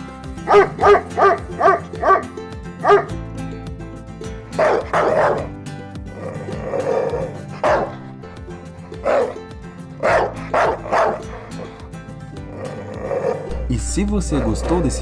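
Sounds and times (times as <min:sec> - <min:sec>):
background music: 0:00.0 - 0:15.0
dog barking: 0:00.4 - 0:03.1, 0:04.6 - 0:05.5, 0:07.2 - 0:08.0, 0:09.0 - 0:09.4, 0:10.0 - 0:11.8.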